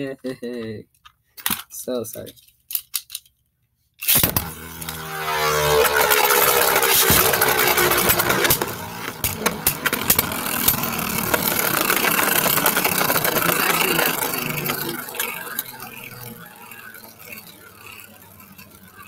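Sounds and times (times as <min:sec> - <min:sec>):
spinning tops whirring: 0:04.1 - 0:19.0
spinning tops clashing: 0:05.7 - 0:19.0.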